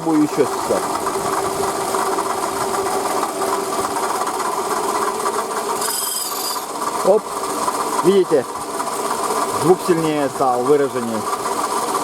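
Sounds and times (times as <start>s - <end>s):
car engine running: 0.0s - 12.0s
high-pitched rasp: 5.8s - 7.2s.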